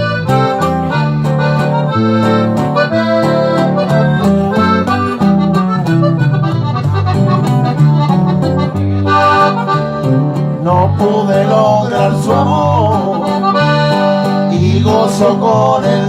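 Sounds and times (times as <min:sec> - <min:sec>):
accordion melody: 0:00.0 - 0:16.0
steady bass line: 0:00.0 - 0:16.0
person singing: 0:10.6 - 0:16.0.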